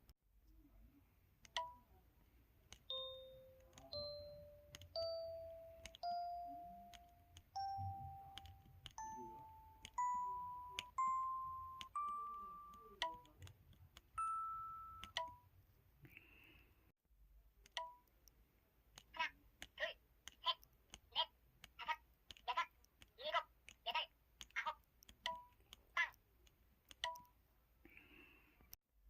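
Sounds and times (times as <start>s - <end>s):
phone keypad clicks: 2.7s - 15.4s, 26.9s - 27.3s.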